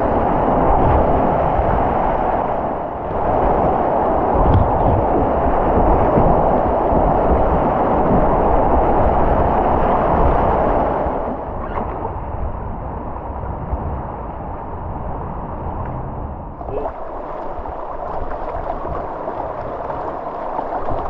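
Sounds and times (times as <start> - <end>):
river rapids rushing: 16.6 - 21.0.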